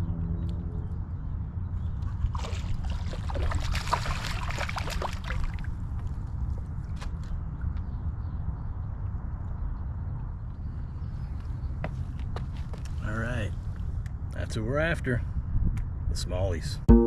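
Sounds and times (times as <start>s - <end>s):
water splashing: 2.3s - 5.8s.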